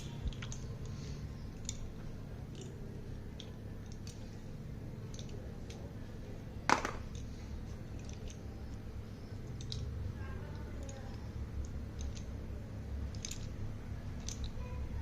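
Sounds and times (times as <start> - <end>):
slate pencils clicking: 0.0 - 1.0, 1.6 - 4.2, 5.0 - 5.9, 7.9 - 8.5, 9.4 - 12.4, 13.1 - 13.6, 14.2 - 14.6.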